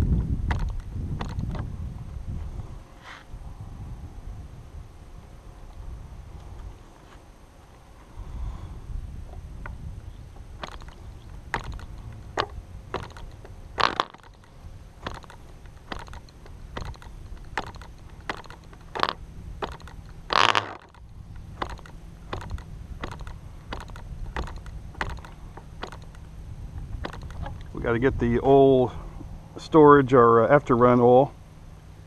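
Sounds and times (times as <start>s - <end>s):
low rumble: 0.0s - 6.8s, 7.8s - 29.7s
propeller snapping: 0.3s - 1.7s, 10.4s - 28.5s
engine pop: 0.4s - 1.7s, 9.6s - 27.8s.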